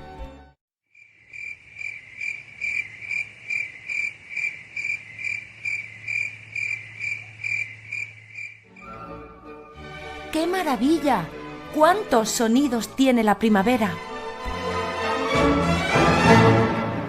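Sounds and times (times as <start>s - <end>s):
cricket chirping: 0.9s - 9.0s.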